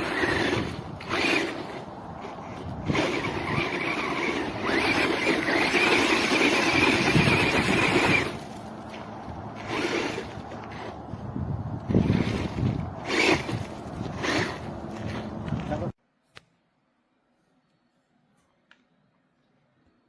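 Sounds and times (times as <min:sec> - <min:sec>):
toy truck motor whining: 0:00.0 - 0:08.7, 0:09.5 - 0:11.1, 0:11.8 - 0:15.4.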